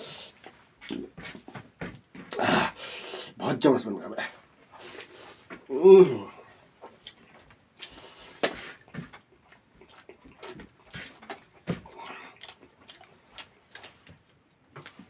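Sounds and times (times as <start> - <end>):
person chewing food: 0.0 - 2.4, 6.3 - 15.0.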